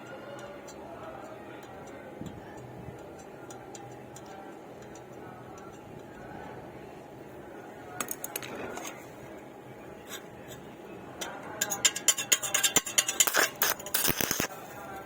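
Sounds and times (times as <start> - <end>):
stick welding crackling: 10.0 - 15.0.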